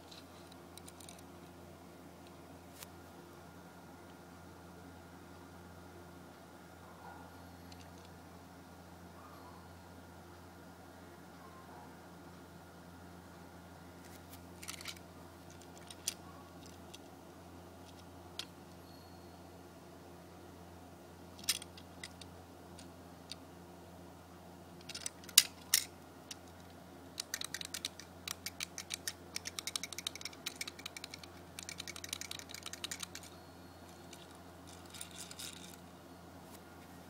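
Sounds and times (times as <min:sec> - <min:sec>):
toy car clicks and knocks: 0:14.6 - 0:17.1, 0:21.4 - 0:23.4, 0:24.8 - 0:33.4, 0:34.0 - 0:35.8
rapid light clicking: 0:24.8 - 0:33.4.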